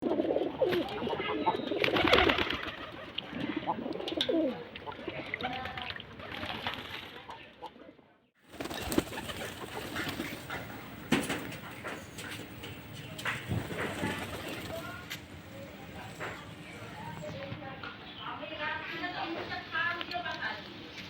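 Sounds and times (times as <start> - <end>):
pigeons cooing: 0.0 - 5.2, 8.5 - 17.4.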